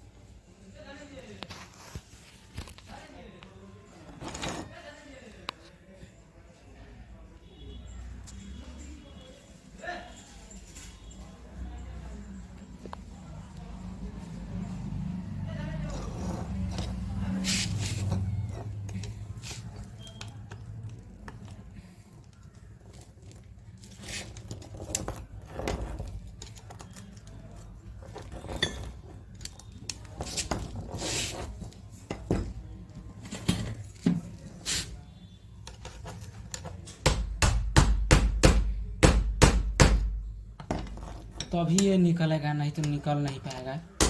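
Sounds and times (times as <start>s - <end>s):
metal parts clicking and knocking: 18.0s - 30.9s.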